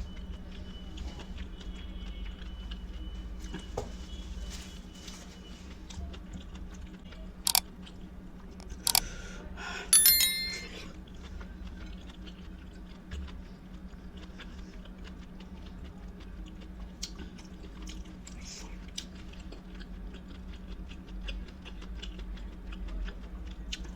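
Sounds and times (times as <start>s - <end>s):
sharp clicks: 8.6s - 9.0s
metallic dishware clink: 10.0s - 10.8s.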